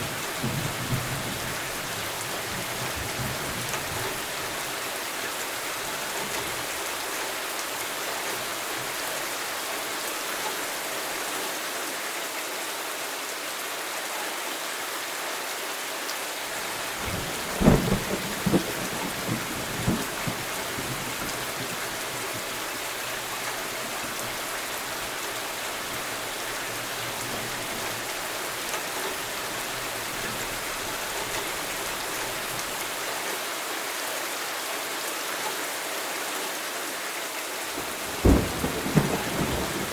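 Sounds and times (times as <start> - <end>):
steady rain: 0.0 - 39.9
low thunder rumble: 16.9 - 24.6, 37.8 - 39.9
sharp thunderclap: 17.0 - 21.8, 38.0 - 39.9.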